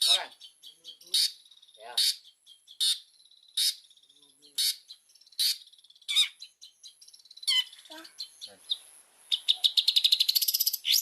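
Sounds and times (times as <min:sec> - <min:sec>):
bird harsh rasping calls: 0:00.0 - 0:11.0
bird twittering: 0:00.0 - 0:11.0.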